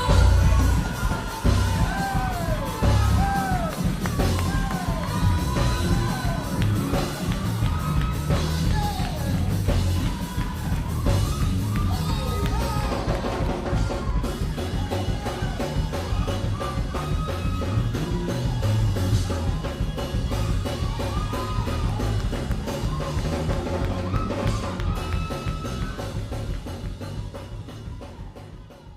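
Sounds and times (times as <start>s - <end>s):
band music: 0.0s - 28.9s
heavy bass drum: 0.0s - 28.9s.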